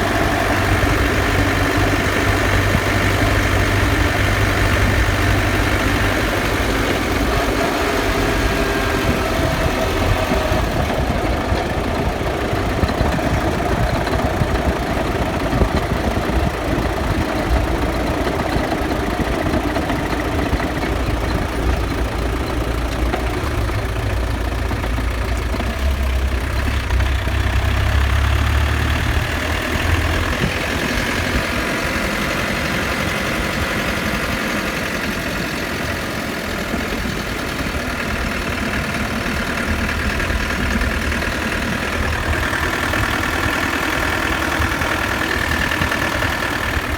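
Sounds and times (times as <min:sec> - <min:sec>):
low drivetrain rumble: 0:00.0 - 0:46.9.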